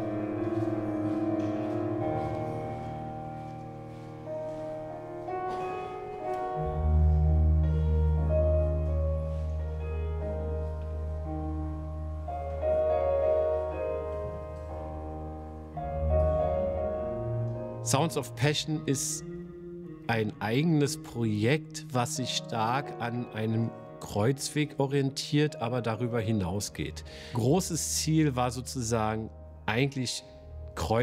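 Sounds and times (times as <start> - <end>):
slow piano chords: 0.0 - 31.0
deep sustained bass: 6.6 - 9.5.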